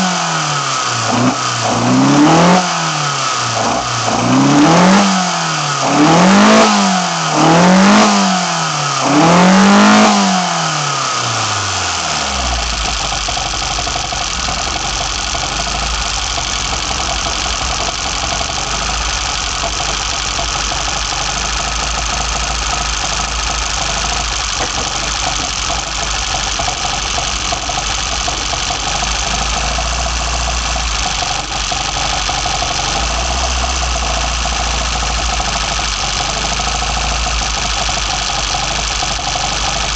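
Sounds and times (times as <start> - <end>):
car engine idling: 0.0 - 39.9
car engine revving: 0.0 - 39.9.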